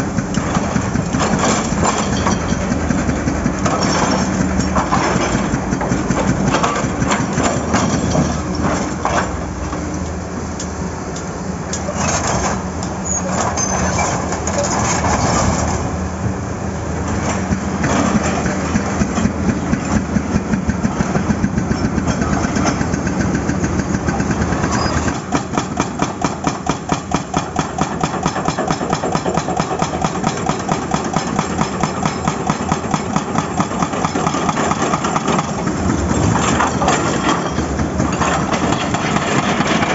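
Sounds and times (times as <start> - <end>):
hydraulic breaker hammering asphalt: 0.0 - 9.3, 17.8 - 39.9
diesel engine running: 0.0 - 39.9.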